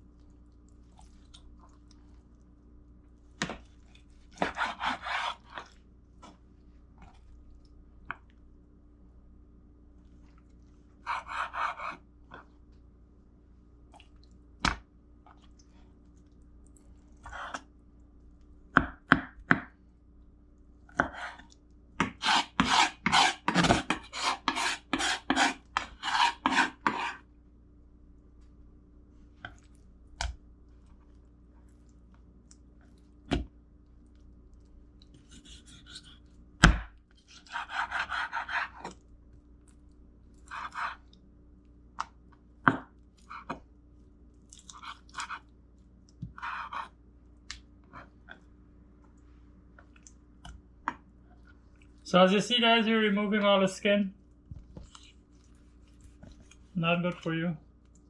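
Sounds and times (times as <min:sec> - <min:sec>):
knife cutting on cutting board: 0:04.4 - 0:05.4, 0:22.0 - 0:27.2, 0:35.3 - 0:36.2.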